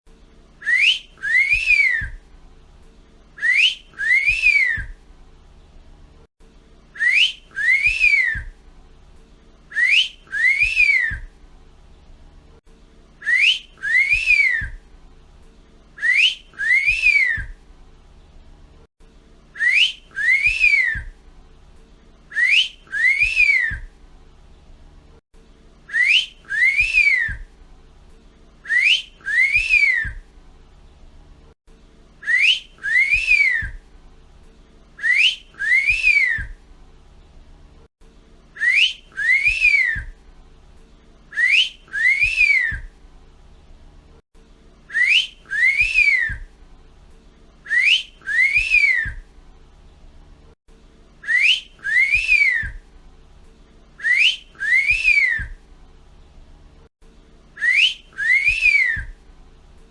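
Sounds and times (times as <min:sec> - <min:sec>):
person wolf whistling: 0:00.6 - 0:02.2, 0:03.4 - 0:05.0, 0:07.0 - 0:08.5, 0:09.7 - 0:11.3, 0:13.2 - 0:14.8, 0:16.0 - 0:17.6, 0:19.6 - 0:21.1, 0:22.3 - 0:23.9, 0:25.9 - 0:27.5, 0:28.6 - 0:30.2, 0:32.2 - 0:33.8, 0:35.0 - 0:36.6, 0:38.6 - 0:40.2, 0:41.3 - 0:42.9, 0:44.9 - 0:46.5, 0:47.7 - 0:49.2, 0:51.2 - 0:52.8, 0:54.0 - 0:55.6, 0:57.6 - 0:59.2.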